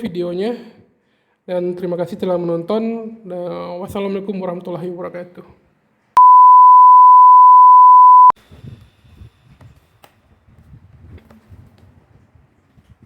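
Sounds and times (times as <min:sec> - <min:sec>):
electronic beep: 0:06.2 - 0:08.4.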